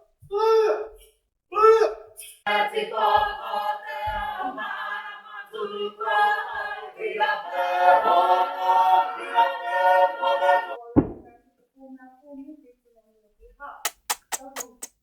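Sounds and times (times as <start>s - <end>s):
group singing long held notes: 2.4s - 10.8s.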